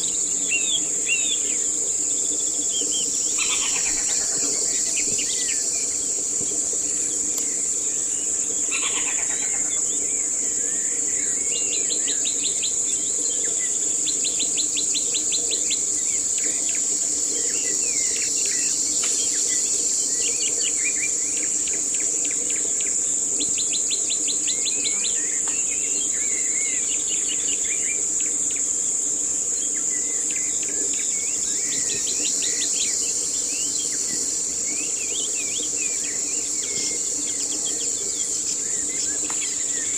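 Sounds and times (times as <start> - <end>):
insects droning: 0.0 - 39.9
birds chirping and trilling: 2.9 - 5.9.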